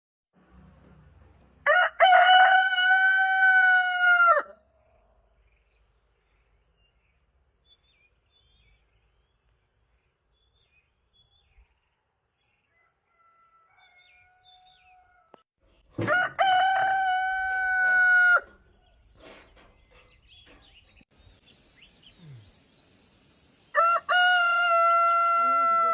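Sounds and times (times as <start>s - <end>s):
rooster crowing: 1.6s - 4.6s, 12.7s - 15.4s, 16.0s - 18.6s, 23.7s - 25.9s.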